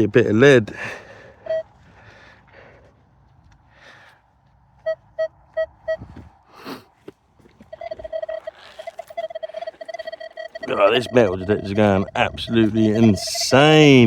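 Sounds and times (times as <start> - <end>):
metal detector beeps: 1.4 - 1.7, 4.8 - 6.2, 7.6 - 14.0
metal detector stuttering tone: 1.4 - 1.7, 4.8 - 6.1, 7.6 - 14.0.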